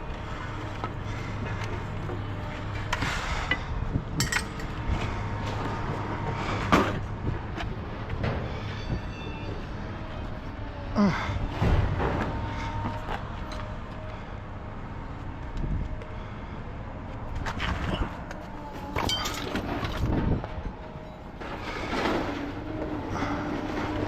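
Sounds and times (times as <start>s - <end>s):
metal scrap knocking and clinking: 4.2s - 4.7s, 19.0s - 20.0s.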